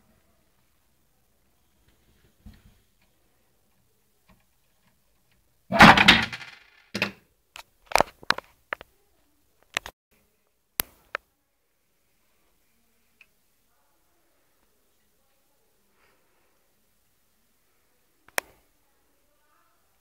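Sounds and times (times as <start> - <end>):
plastic toy clicks and clatter: 5.7 - 7.1.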